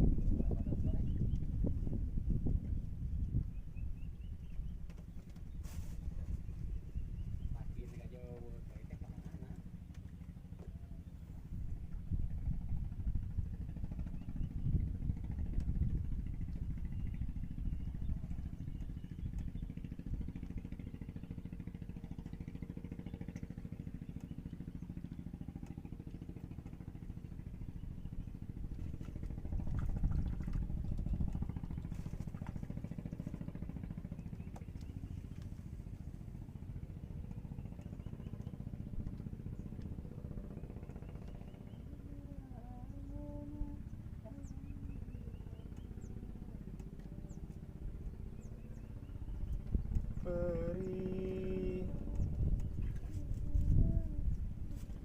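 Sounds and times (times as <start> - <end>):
small motor running: 41.1 - 55.0.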